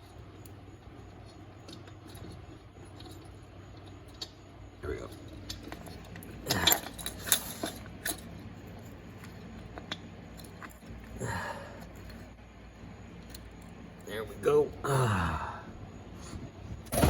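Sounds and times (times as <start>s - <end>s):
metal parts clicking and knocking: 0.0s - 11.0s.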